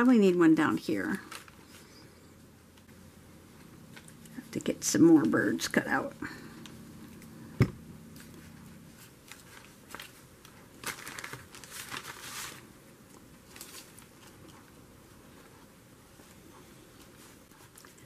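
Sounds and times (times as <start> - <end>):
paper rustling and crinkling: 1.1 - 1.9, 8.1 - 14.7.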